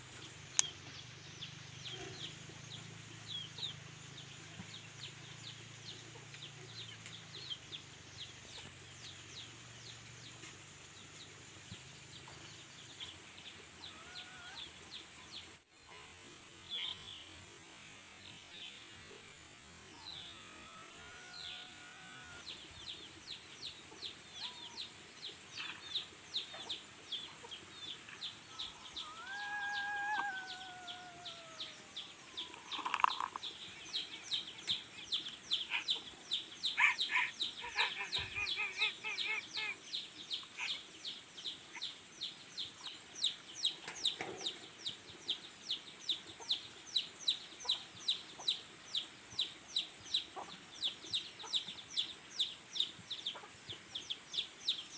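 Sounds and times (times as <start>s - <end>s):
drawn-out bird calls: 28.0s - 40.9s
chicken-like clucks: 32.4s - 33.5s.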